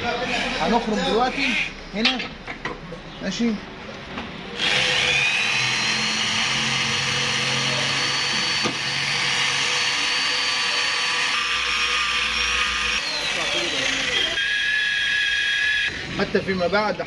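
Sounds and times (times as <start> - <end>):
electric drill boring into steel: 4.6 - 16.2.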